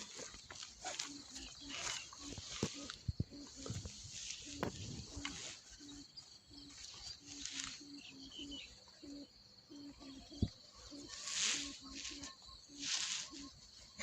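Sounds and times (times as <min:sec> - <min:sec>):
wind gusts on microphone: 0:02.2 - 0:05.4.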